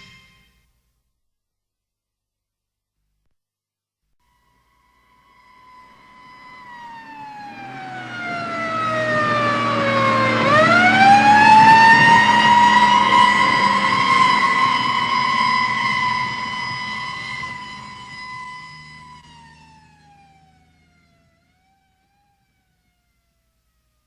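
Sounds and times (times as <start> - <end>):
siren-like keyboard tone: 4.2 - 23.4.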